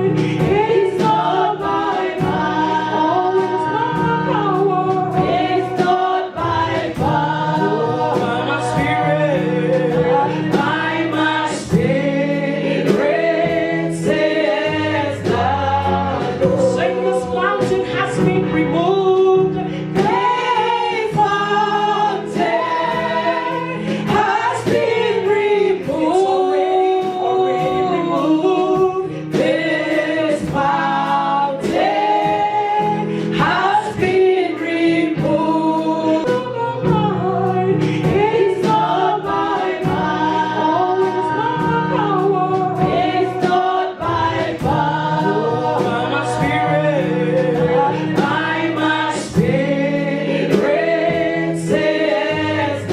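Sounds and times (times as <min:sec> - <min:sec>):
band playing: 0:00.0 - 0:52.9
choir singing gospel song: 0:00.0 - 0:52.9
drums steady beat: 0:00.0 - 0:52.9.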